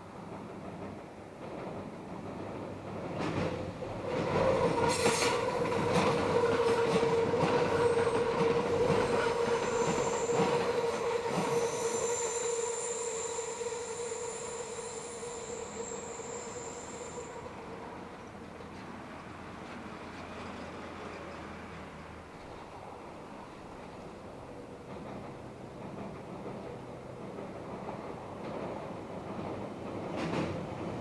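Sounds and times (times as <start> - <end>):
train wheels squealing on rails: 2.4 - 31.0
high whistling tone: 6.5 - 18.2.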